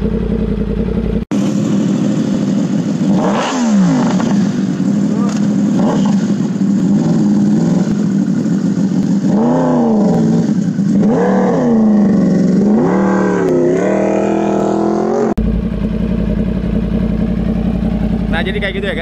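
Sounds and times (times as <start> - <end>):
motorcycle engine idling and revving: 0.0 - 19.0.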